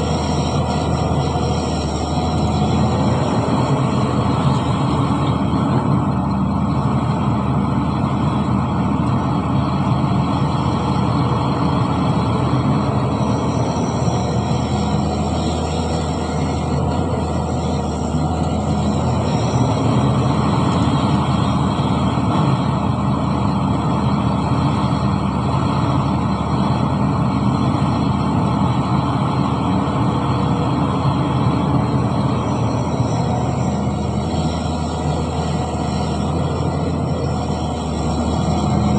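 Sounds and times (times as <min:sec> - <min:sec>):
heavy diesel engine running: 0:00.0 - 0:38.9.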